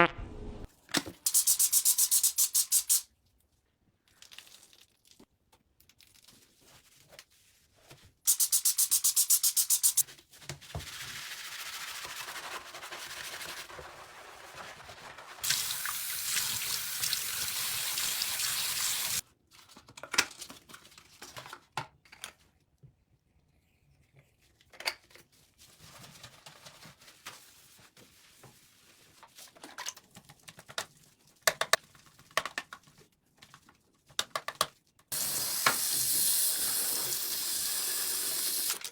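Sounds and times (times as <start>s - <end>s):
water running from a tap: 13.8s - 19.2s, 35.1s - 38.9s.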